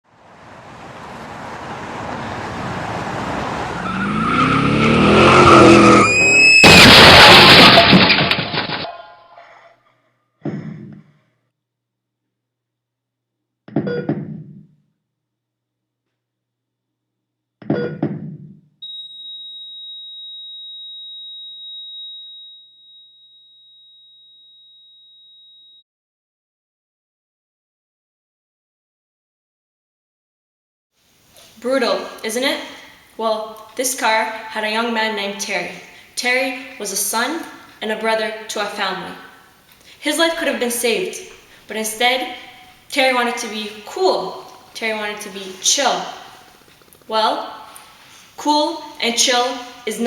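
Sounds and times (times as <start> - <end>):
car engine approaching: 0.0 - 6.4
loud car crash impact: 0.6 - 8.9
tyres screeching: 3.1 - 8.0
sudden loud hit: 6.0 - 8.8.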